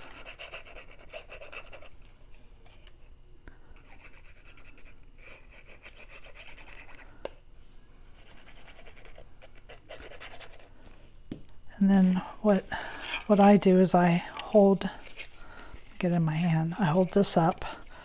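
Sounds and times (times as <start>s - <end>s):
glue scratching on paper: 0.2s - 1.9s, 3.8s - 7.1s.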